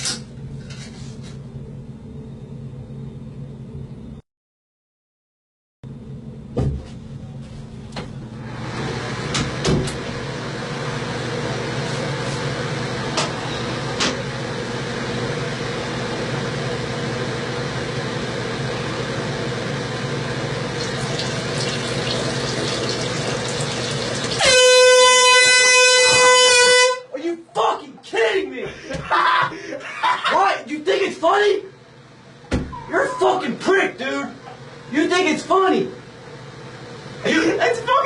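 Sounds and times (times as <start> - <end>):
air horn blast: 24.4 - 27.2.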